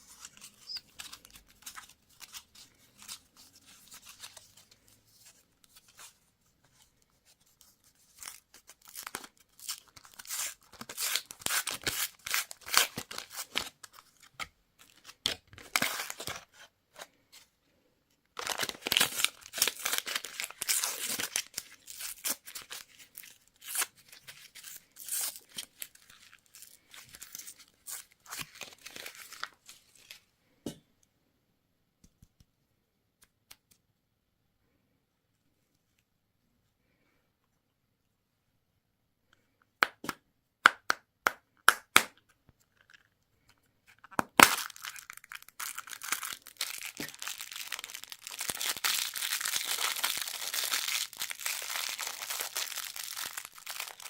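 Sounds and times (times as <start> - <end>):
candy wrapper tearing and crinkling: 8.1 - 14.3, 18.4 - 30.1, 43.9 - 54.0.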